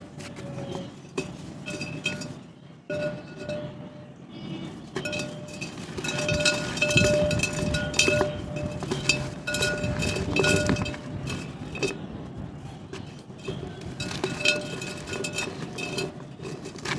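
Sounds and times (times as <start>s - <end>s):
dry mud crumbling: 5.0s - 12.0s, 13.0s - 16.9s
pieces clinking together: 13.4s - 16.9s.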